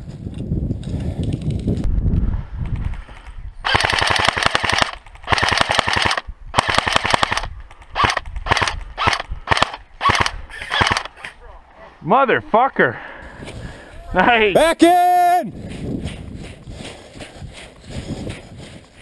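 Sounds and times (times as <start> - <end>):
electric guns firing bursts: 3.6 - 11.1.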